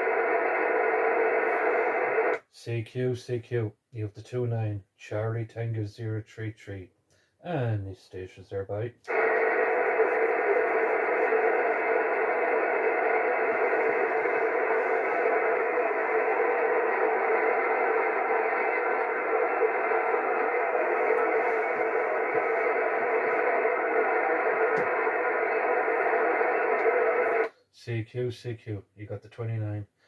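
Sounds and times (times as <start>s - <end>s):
radio static hiss: 0.0s - 2.7s, 9.1s - 28.1s.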